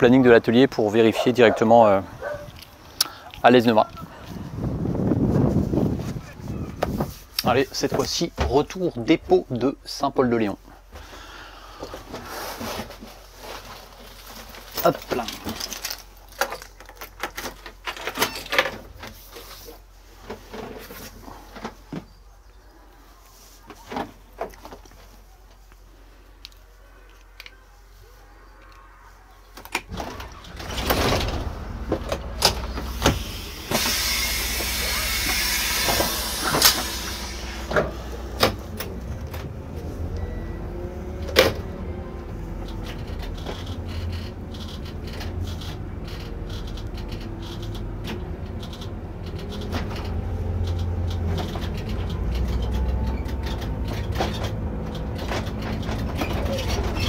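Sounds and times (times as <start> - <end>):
coach engine running: 29.9 - 57.0
compressed air hiss: 32.8 - 38.2.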